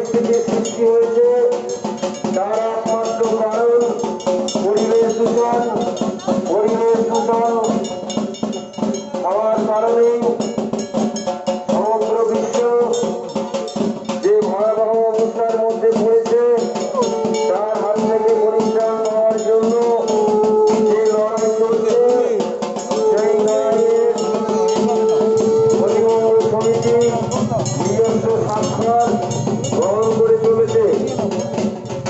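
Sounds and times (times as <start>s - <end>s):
fast dense percussion: 0.0s - 32.0s
gliding melody: 24.1s - 32.0s.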